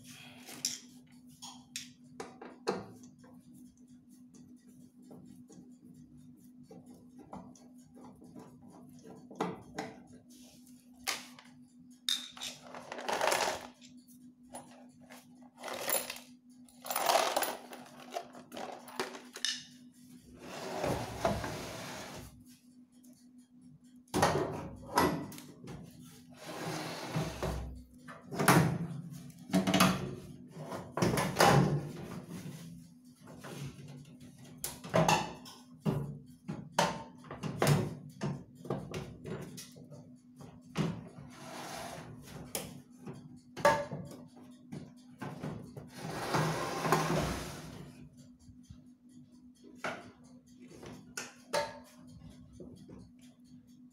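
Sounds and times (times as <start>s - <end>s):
metal parts and tools clicking: 12.1s - 19.8s.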